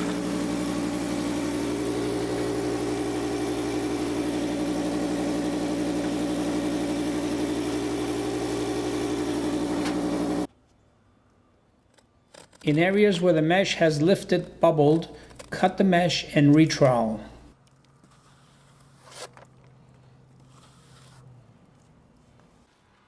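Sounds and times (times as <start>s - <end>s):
spray machinery humming: 0.0s - 10.5s.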